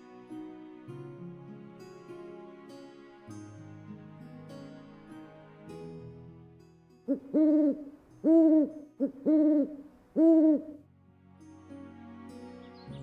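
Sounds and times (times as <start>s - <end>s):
bird hooting: 7.1s - 10.8s.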